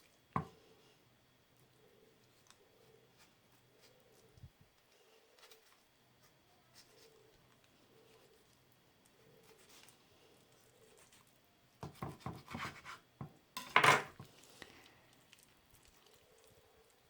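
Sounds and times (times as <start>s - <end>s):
dishes clattering: 13.6s - 14.2s
utensils knocking and scraping: 13.6s - 14.2s.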